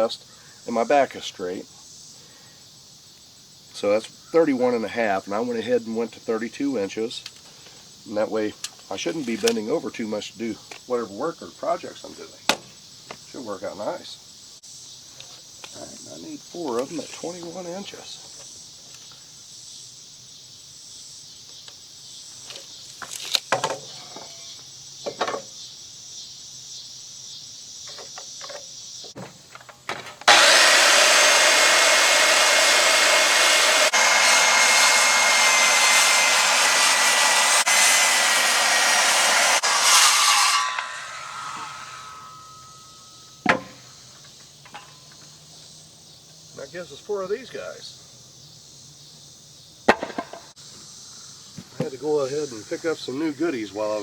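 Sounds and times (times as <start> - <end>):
crickets chirring: 0.0 - 30.2, 41.3 - 54.0
boards knocking: 23.5 - 24.3, 43.4 - 43.8, 49.9 - 50.5
power saw cutting wood: 30.2 - 43.6.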